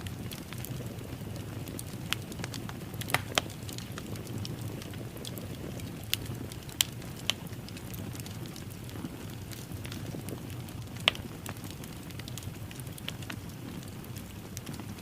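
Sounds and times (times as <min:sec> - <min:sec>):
wood fire crackling and popping: 0:00.0 - 0:15.0.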